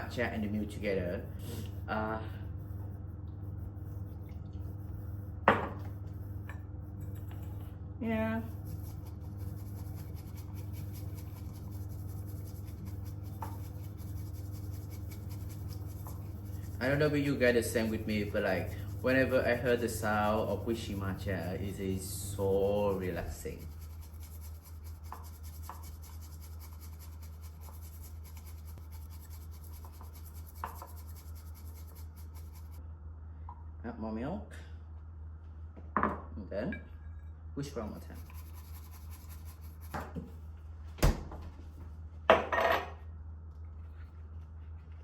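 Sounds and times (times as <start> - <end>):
whisk scratching in a bowl: 0.0 - 7.6, 8.3 - 32.8, 37.9 - 40.0.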